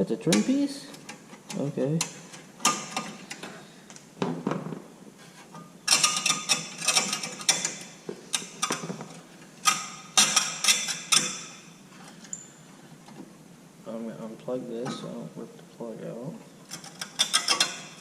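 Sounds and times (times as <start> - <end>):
hand tool clicking and rattling: 5.9 - 11.6, 16.7 - 18.0.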